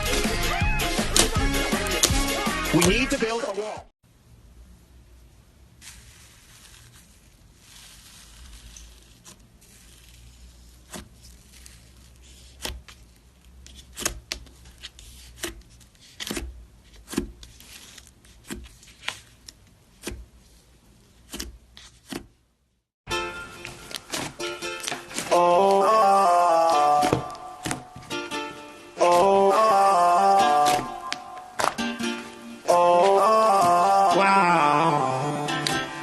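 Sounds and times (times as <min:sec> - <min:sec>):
slime rustling: 0:05.2 - 0:22.7, 0:23.4 - 0:34.2.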